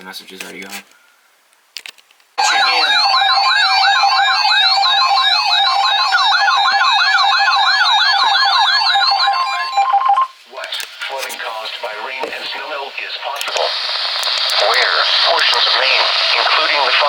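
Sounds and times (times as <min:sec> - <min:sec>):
warbling siren alarm: 0:02.4 - 0:10.3.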